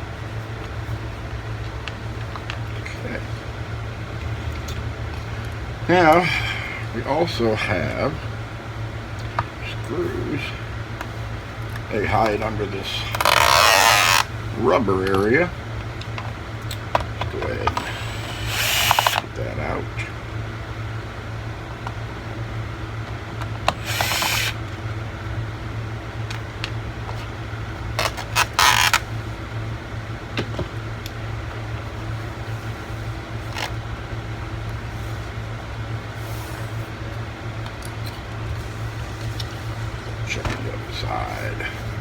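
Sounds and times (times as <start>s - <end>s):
steady low hum: 0.0s - 42.0s
tool scraping plastic: 13.1s - 14.3s, 17.2s - 19.2s, 23.6s - 24.6s, 28.0s - 29.1s.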